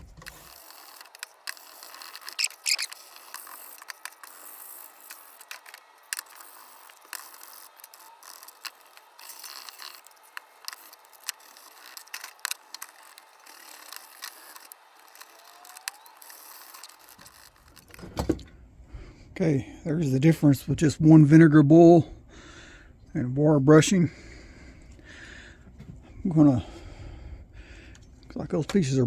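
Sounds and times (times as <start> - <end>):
small metal clicks: 0.0 - 18.0
metal scraping: 0.0 - 18.2.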